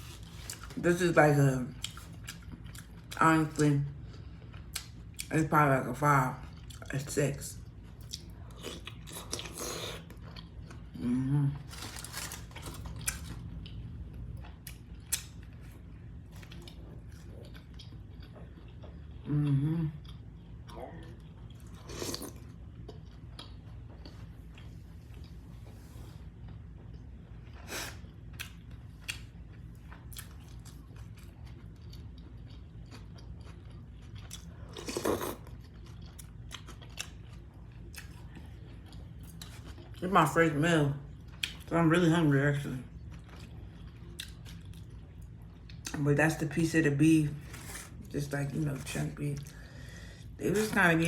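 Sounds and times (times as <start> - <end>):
person chewing: 0.0 - 0.8, 1.8 - 3.2, 4.0 - 5.3, 6.4 - 6.9, 7.7 - 11.0, 11.6 - 25.6, 26.4 - 40.0, 41.1 - 41.7, 42.9 - 46.0.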